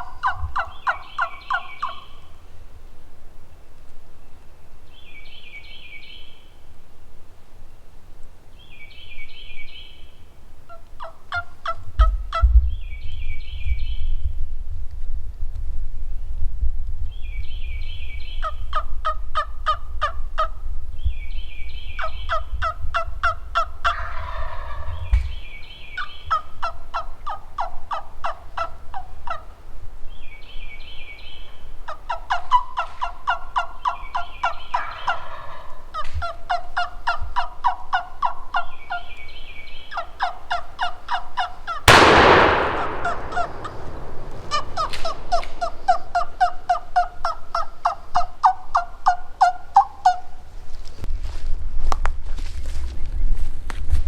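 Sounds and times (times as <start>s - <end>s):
turkeys gobbling: 0.0s - 2.3s, 10.7s - 12.4s, 22.3s - 25.1s, 26.0s - 29.5s, 31.9s - 39.1s, 39.9s - 50.2s
shotgun blast: 41.9s - 45.8s
short higher turkey call: 41.9s - 46.0s.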